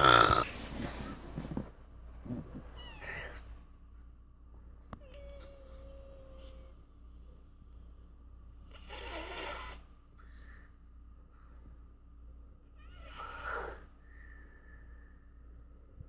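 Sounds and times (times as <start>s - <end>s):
person snoring: 0.0s - 0.5s.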